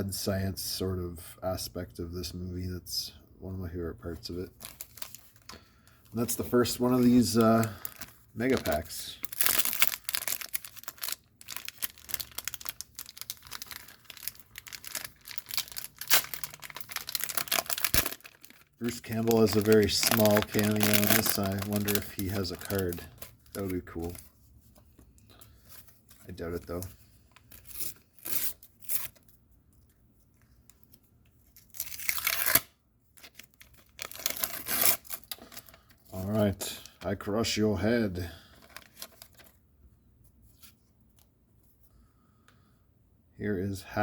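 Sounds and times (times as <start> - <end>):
sticker packs crinkling: 4.5 - 24.3, 33.2 - 37.0
wrapper being torn open: 4.6 - 5.6, 6.2 - 24.3, 26.6 - 29.3, 31.4 - 35.9, 38.6 - 39.5.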